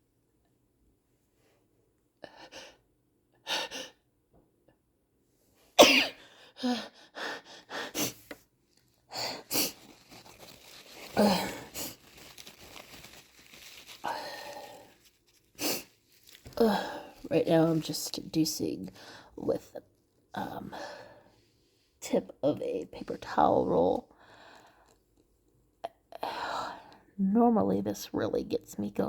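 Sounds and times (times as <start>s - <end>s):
person sneezing: 5.8s - 6.2s.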